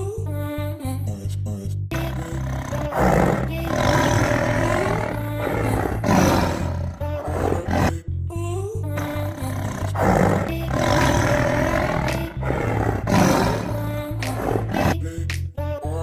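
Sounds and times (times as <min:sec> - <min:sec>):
tiger roaring: 0:02.0 - 0:08.0, 0:09.0 - 0:15.0.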